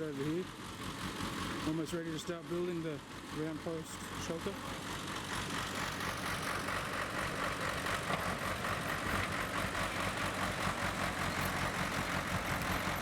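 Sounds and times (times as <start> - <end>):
bulldozer diesel engine running: 0.0 - 13.0.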